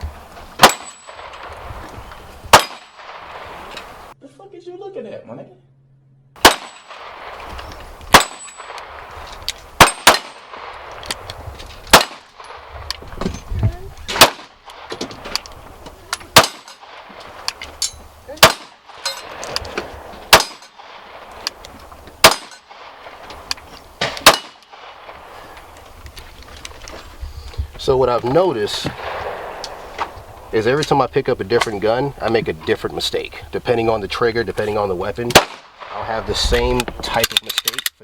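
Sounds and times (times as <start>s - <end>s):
handgun shots: 0.6s - 1.5s, 2.5s - 3.2s, 6.4s - 7.4s, 8.1s - 8.9s, 9.8s - 11.2s, 11.9s - 12.5s, 14.1s - 14.5s, 16.3s - 16.8s, 18.4s - 19.6s, 20.3s - 21.0s, 22.2s - 22.7s, 24.0s - 24.7s, 35.3s - 36.0s.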